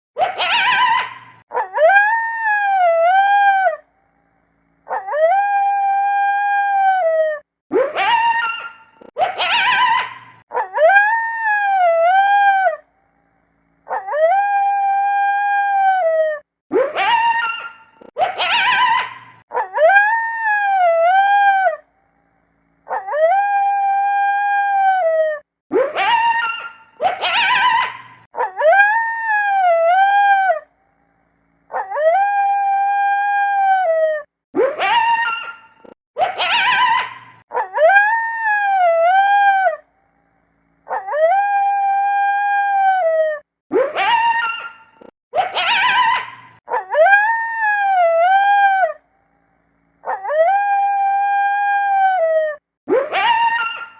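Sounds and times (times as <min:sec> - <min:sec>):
wolves yipping: 0:00.2 - 0:03.7, 0:04.9 - 0:06.3, 0:07.7 - 0:12.7, 0:13.9 - 0:14.7, 0:16.7 - 0:21.7, 0:22.9 - 0:23.7, 0:25.7 - 0:30.6, 0:31.7 - 0:33.9, 0:34.6 - 0:39.7, 0:40.9 - 0:43.1, 0:43.7 - 0:49.0, 0:50.0 - 0:53.9
wolves howling: 0:50.0 - 0:53.9.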